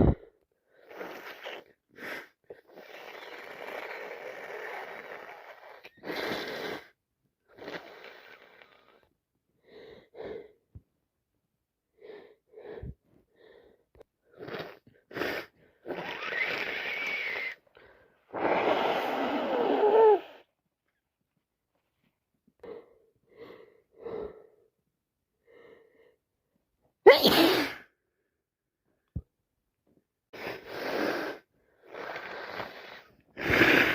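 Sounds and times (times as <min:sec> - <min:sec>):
woman blowing her nose: 0:00.8 - 0:08.9, 0:14.3 - 0:17.6, 0:18.3 - 0:20.5, 0:27.1 - 0:27.9, 0:30.4 - 0:33.9
whistle through blocked nose: 0:16.0 - 0:17.6
woman sneezing: 0:27.1 - 0:27.9.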